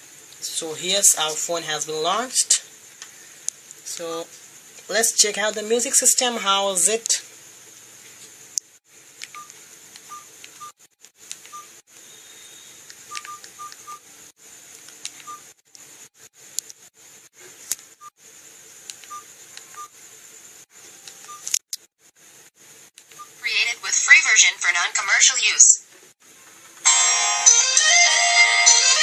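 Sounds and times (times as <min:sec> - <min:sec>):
phone key beeps: 0:13.1 - 0:14.0, 0:15.2 - 0:15.4, 0:19.0 - 0:19.9, 0:21.2 - 0:21.5.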